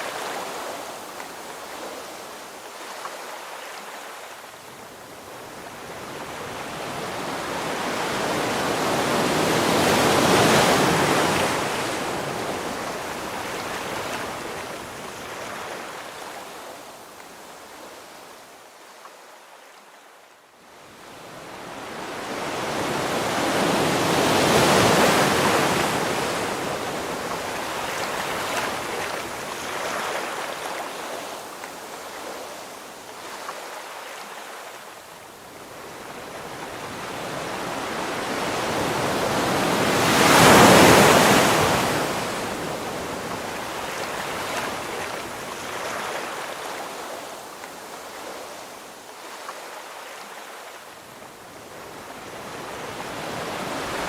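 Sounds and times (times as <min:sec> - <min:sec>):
waves washing out hiss: 0:00.0 - 0:18.6, 0:21.0 - 0:54.0
ocean waves crashing: 0:05.8 - 0:14.5, 0:21.8 - 0:31.4, 0:36.2 - 0:47.4, 0:51.9 - 0:54.0.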